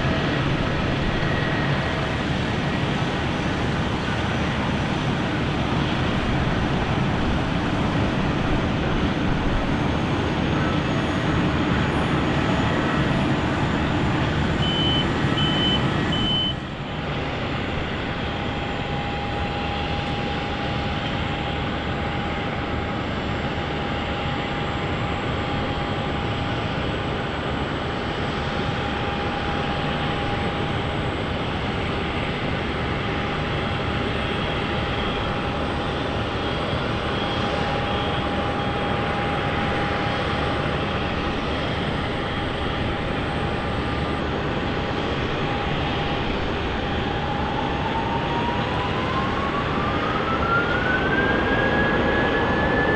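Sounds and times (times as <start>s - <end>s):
jet engines rumbling: 0.0s - 52.9s
steady whine: 28.5s - 52.9s.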